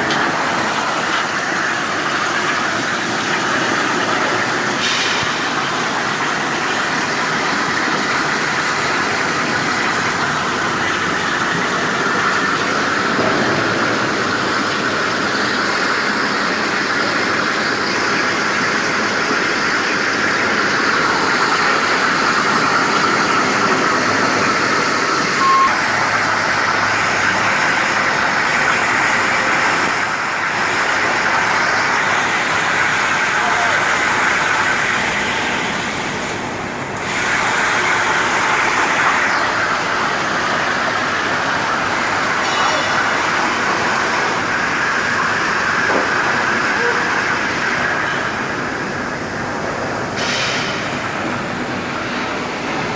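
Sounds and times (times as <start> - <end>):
short beep: 25.4 - 25.9.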